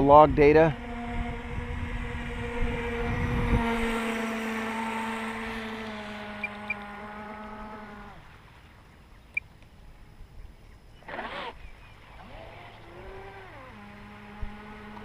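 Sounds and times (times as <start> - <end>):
low rumble: 0.0 - 8.4
electric motor whining: 0.7 - 8.4, 11.0 - 15.0.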